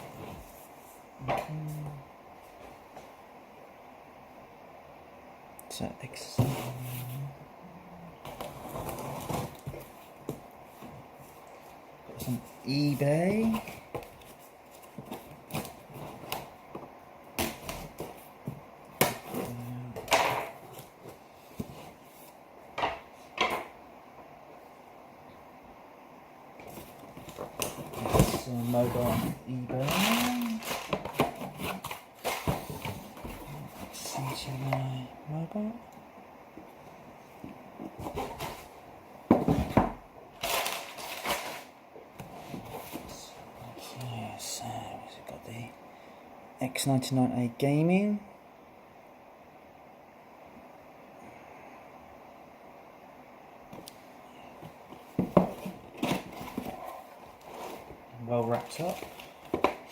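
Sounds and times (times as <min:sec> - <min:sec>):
cardboard packaging rustling: 0:08.3 - 0:22.4, 0:26.6 - 0:34.9, 0:37.8 - 0:43.8, 0:54.5 - 0:59.9
scraping or crinkling: 0:26.6 - 0:34.6, 0:40.4 - 0:43.9, 0:54.6 - 0:59.9.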